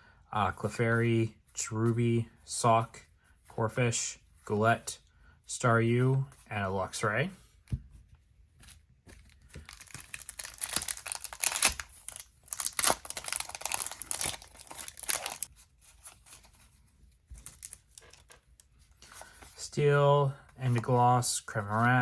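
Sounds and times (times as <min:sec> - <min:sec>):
foil wrapper tearing and crinkling: 0:09.6 - 0:15.5.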